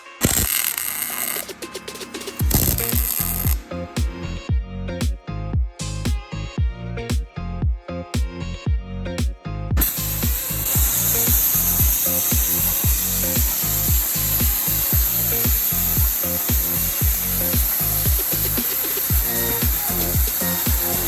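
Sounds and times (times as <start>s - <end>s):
power tool cutting metal: 0.0s - 3.6s, 9.8s - 21.0s
electronic music with kick drum: 0.0s - 21.0s.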